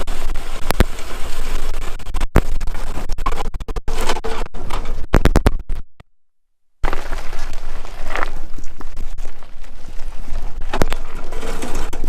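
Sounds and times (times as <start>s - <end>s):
plow blade scraping ground: 0.0s - 5.8s, 6.8s - 12.0s.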